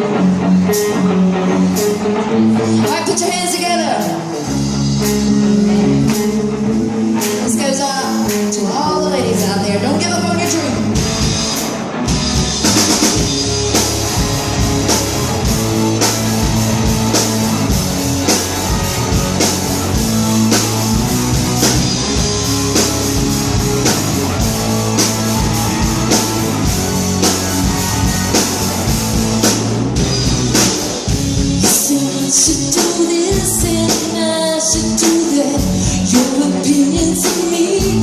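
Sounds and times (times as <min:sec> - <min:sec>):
bass guitar: 0:00.0 - 0:38.0
guitar: 0:00.0 - 0:38.0
drum kit beat: 0:10.9 - 0:34.2.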